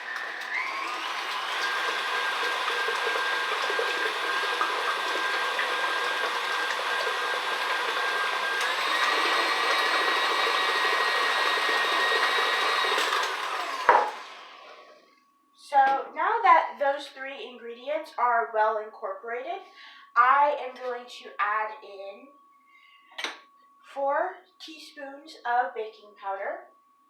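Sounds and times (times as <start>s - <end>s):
electric mixer whine: 0.0s - 15.0s.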